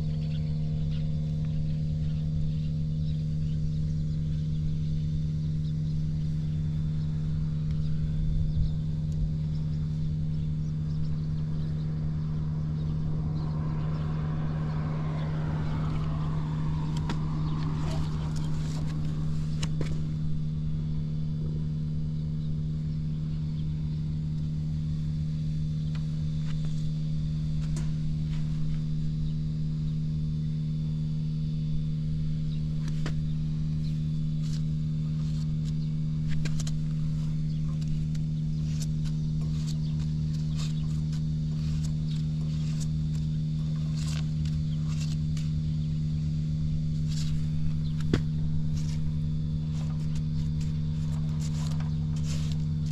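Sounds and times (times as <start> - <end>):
motorcycle engine idling: 0.0 - 52.9.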